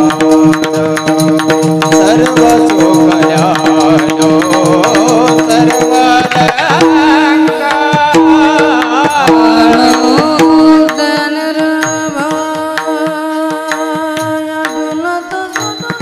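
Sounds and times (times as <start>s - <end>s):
held accompanying notes: 0.0s - 16.0s
tabla-like drum strokes: 0.0s - 16.0s
high voice singing: 2.0s - 16.0s.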